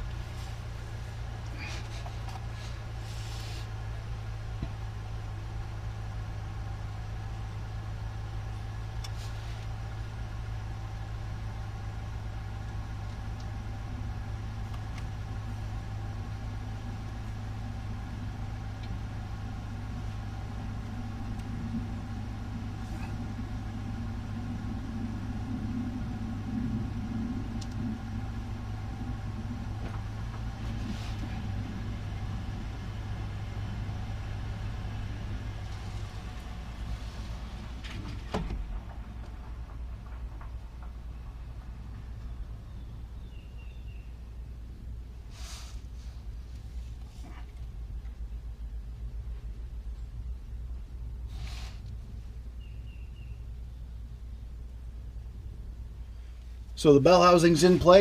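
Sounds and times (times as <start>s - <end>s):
low hum: 0.0s - 58.0s.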